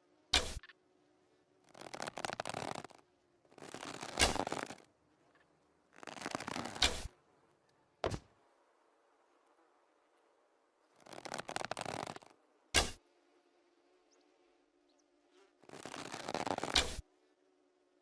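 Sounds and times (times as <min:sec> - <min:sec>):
bow drawn with rustling scrape: 0:01.6 - 0:07.2, 0:11.0 - 0:13.0, 0:15.3 - 0:17.1
bow string snapping: 0:06.0 - 0:07.1, 0:15.7 - 0:17.0.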